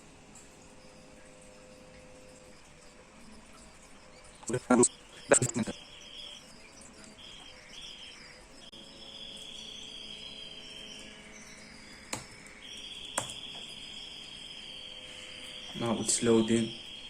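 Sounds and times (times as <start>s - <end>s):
insect-like chirring: 0.4s - 17.0s
sharp clicks: 12.1s - 13.7s.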